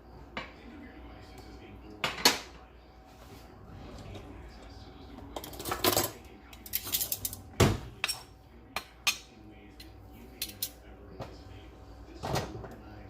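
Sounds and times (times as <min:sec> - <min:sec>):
utensils clinking against dishes: 0:05.2 - 0:10.9.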